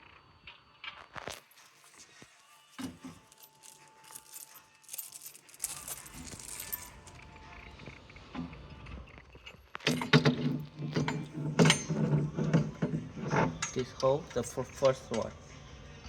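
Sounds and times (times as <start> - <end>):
metal parts clinking and rattling: 2.7 - 7.2, 9.7 - 15.3.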